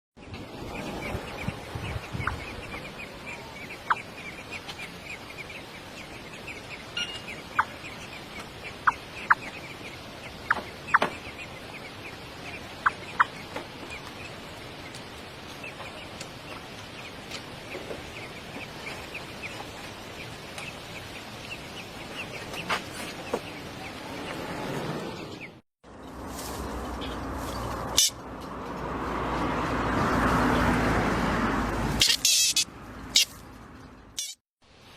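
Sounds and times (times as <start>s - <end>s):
baby birds cheeping: 0.6s - 15.0s, 32.0s - 33.3s.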